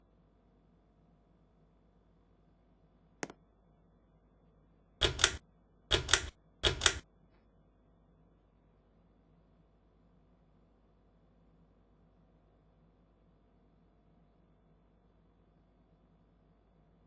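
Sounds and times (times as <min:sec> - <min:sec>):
pull-chain switch clicking: 0:05.0 - 0:07.0.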